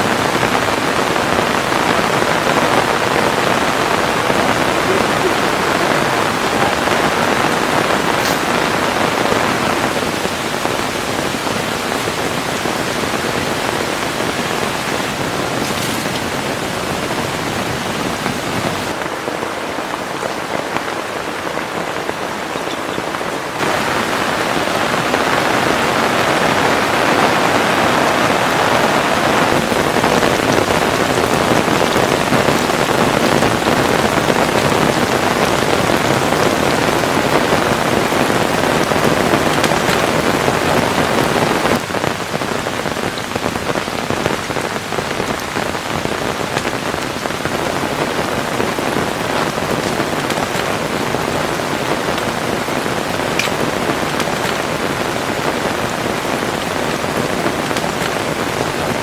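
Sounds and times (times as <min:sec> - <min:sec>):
heavy rain downpour: 0:00.0 - 0:59.0.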